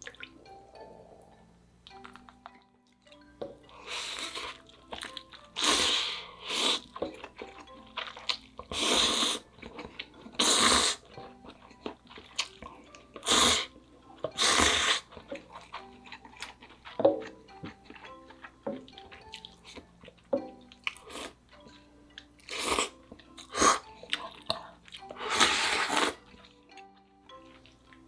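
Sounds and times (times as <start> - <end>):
faint background music: 0.0 - 28.0
noodles being slurped: 3.7 - 19.8, 22.4 - 26.5.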